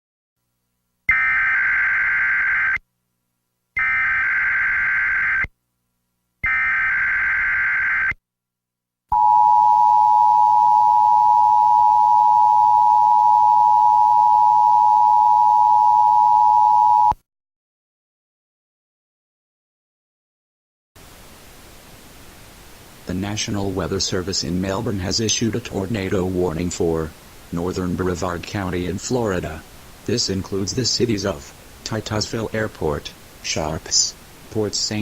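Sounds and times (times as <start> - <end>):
two-tone attention signal: 9.1 - 17.2.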